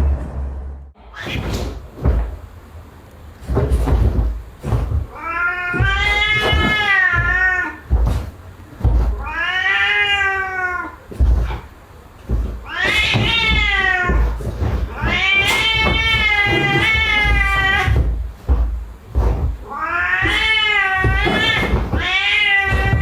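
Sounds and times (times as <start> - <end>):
knocks and thumps: 1.2 - 9.5, 11.1 - 23.0
cat yowling: 5.0 - 8.2, 9.0 - 11.6, 12.4 - 18.1, 19.6 - 23.0.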